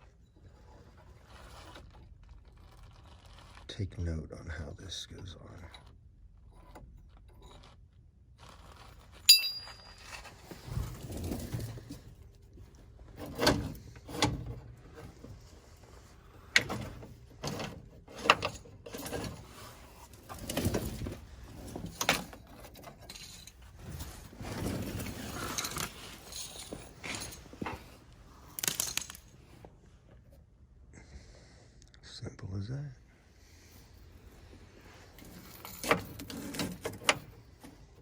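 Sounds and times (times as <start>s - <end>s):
metal cable clinking and scraping: 0.0s - 3.8s, 4.9s - 30.2s, 33.7s - 38.0s
sharp metallic ping: 9.3s - 10.0s.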